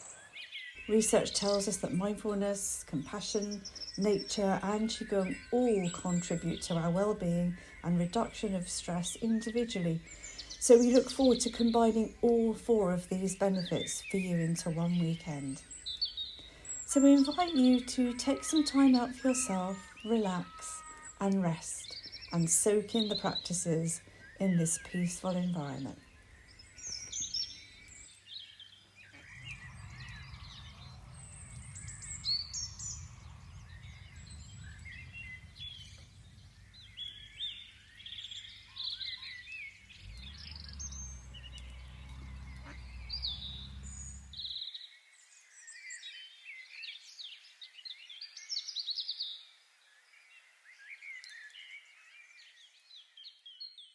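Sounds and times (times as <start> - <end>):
small birds singing and chirping: 0.0 - 53.9
low rumble: 29.2 - 44.4.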